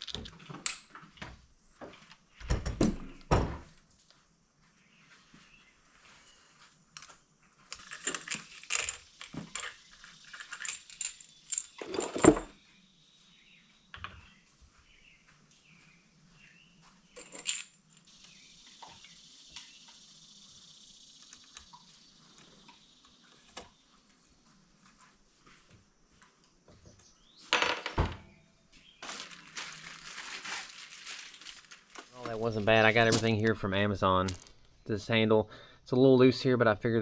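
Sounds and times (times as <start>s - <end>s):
metal hardware clinking: 32.2s - 34.9s.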